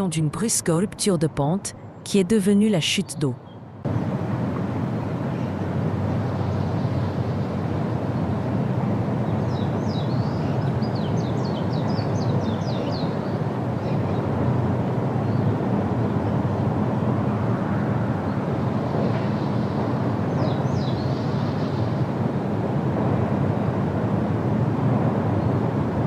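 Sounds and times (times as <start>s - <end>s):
small bird chirping: 9.4s - 14.2s.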